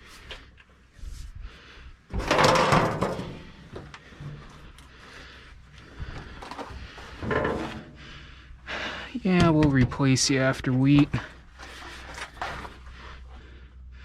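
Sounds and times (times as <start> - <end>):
metal knocks and clunks: 2.1 - 4.7, 6.4 - 8.0, 9.3 - 10.3
metal scraping and sliding: 2.1 - 8.2.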